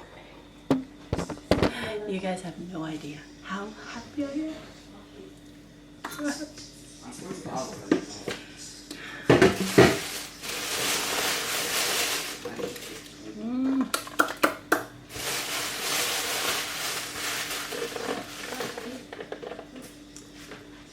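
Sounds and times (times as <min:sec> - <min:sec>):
food containers clattering: 0:09.3 - 0:13.1, 0:15.1 - 0:19.8
rustling and scraping: 0:09.4 - 0:13.1, 0:15.1 - 0:20.7.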